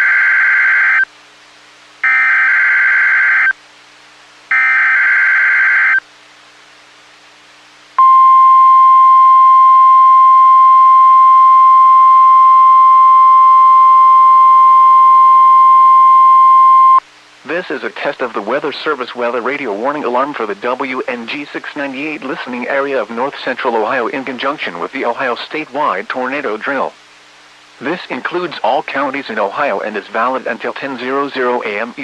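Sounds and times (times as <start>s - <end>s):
steady alarm tone: 0.0s - 1.1s, 2.0s - 3.6s, 4.5s - 6.0s, 8.0s - 17.0s.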